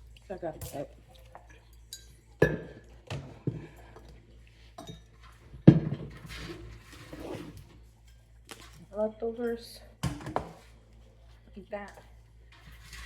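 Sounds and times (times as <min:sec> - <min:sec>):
dishes clinking and knocking: 0:02.0 - 0:03.8, 0:04.8 - 0:06.4, 0:10.0 - 0:10.6.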